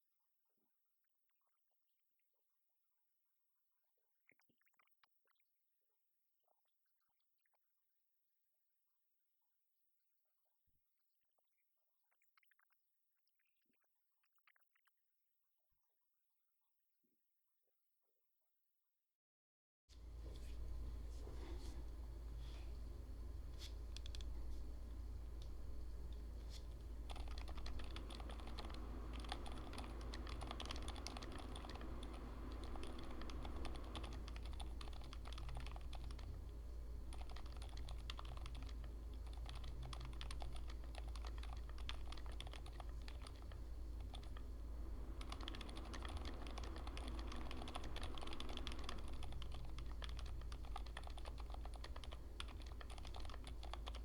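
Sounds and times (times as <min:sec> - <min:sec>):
steady low hum: 0:19.9 - 0:54.0
quiet keyboard typing: 0:20.0 - 0:54.0.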